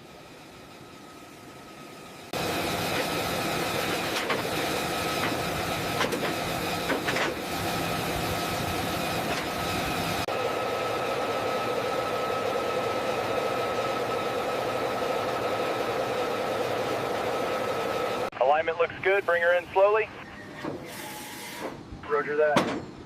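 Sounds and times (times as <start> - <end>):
machine running with high whine: 0.0 - 18.3.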